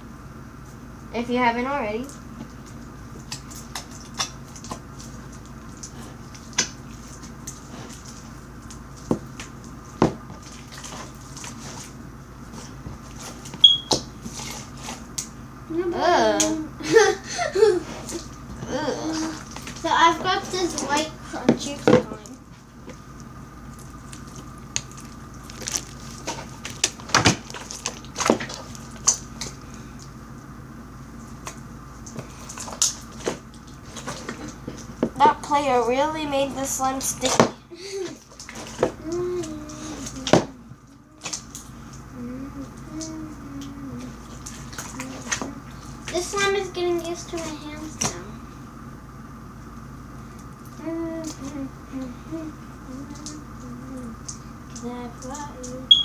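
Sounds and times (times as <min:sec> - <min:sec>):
steady low hum: 0:00.0 - 0:56.0
crunchy slime crackling and popping: 0:23.1 - 0:30.2.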